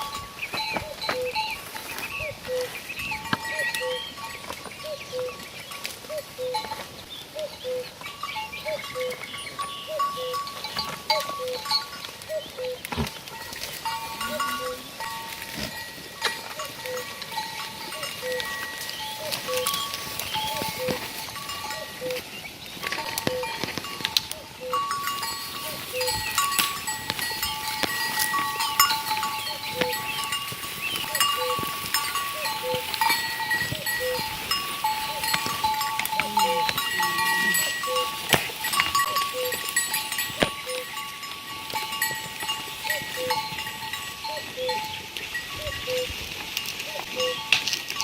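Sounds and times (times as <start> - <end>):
goat bells clanking: 0.0 - 48.0
goats bleating: 25.7 - 41.0.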